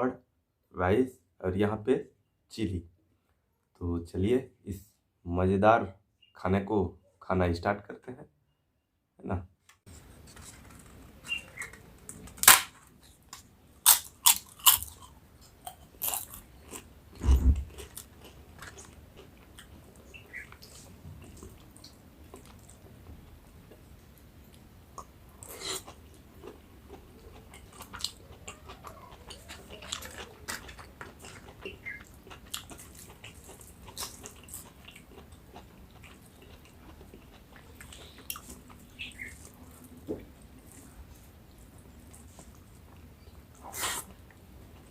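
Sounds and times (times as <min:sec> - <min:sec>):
crunching bites of crisp food: 0:10.2 - 0:22.8, 0:24.9 - 0:44.9
chewing and mouth sounds: 0:13.8 - 0:22.9, 0:23.6 - 0:44.9.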